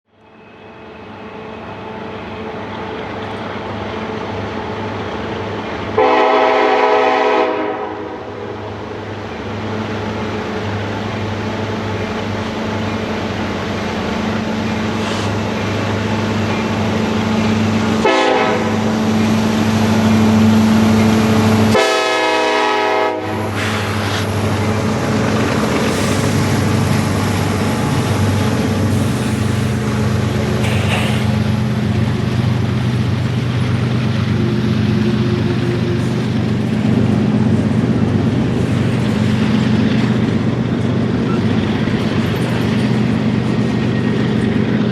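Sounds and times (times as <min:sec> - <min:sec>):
locomotive engine drone: 0:00.2 - 0:44.9
locomotive horn: 0:06.0 - 0:08.7, 0:18.0 - 0:19.0, 0:21.7 - 0:24.2.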